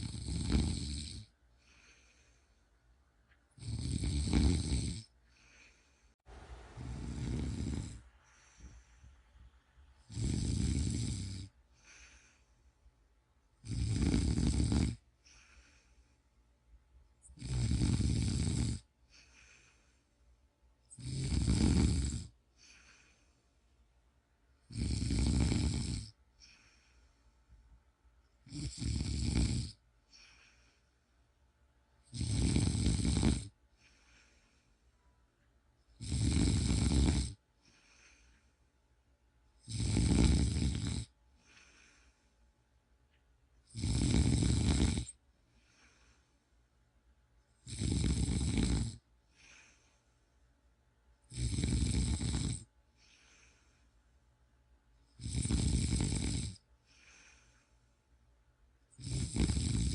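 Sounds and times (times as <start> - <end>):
person snoring: 0.0 - 2.4, 3.5 - 5.9, 6.6 - 9.1, 10.0 - 12.5, 13.6 - 16.0, 17.2 - 20.0, 20.9 - 23.3, 24.7 - 27.1, 28.4 - 30.8, 32.0 - 34.6, 36.0 - 38.5, 39.6 - 42.2, 43.6 - 46.2, 47.6 - 49.8, 51.2 - 53.8, 55.1 - 57.7, 58.9 - 59.9
soft breathing: 1.3 - 3.6, 5.0 - 13.6, 14.9 - 17.4, 18.8 - 21.0, 22.3 - 24.1, 26.1 - 28.4, 29.7 - 31.4, 33.4 - 35.9, 37.3 - 38.9, 40.3 - 42.8, 44.6 - 46.8, 49.0 - 51.3, 52.6 - 54.4, 56.5 - 59.9.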